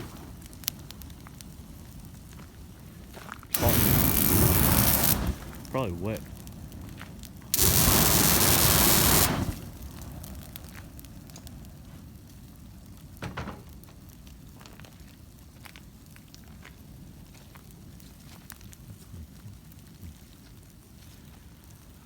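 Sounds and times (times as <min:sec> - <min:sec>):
burning trash crackling and popping: 0:00.0 - 0:22.0
sharp snaps of fire: 0:00.0 - 0:22.0
loud rushing blast: 0:03.5 - 0:06.0, 0:07.6 - 0:09.9.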